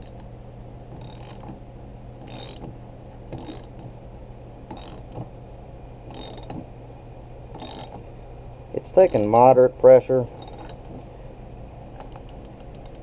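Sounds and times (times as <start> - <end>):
steady low hum: 0.0 - 13.0
ratchet wrench clicking: 1.0 - 1.5, 2.3 - 2.6, 3.4 - 3.7, 4.7 - 5.1, 6.1 - 6.5, 7.6 - 8.0, 9.0 - 9.5, 10.4 - 10.9, 12.0 - 13.0.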